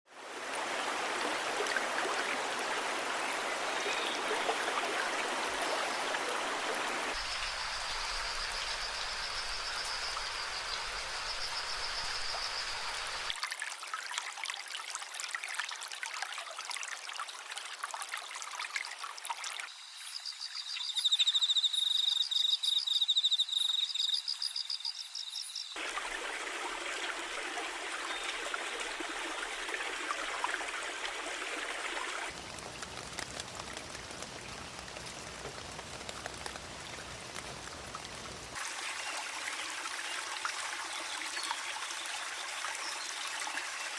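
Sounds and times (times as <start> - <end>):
small waterfall rushing: 0.1 - 13.4, 25.8 - 43.9
rapid pulsing high-pitched call: 19.8 - 25.7.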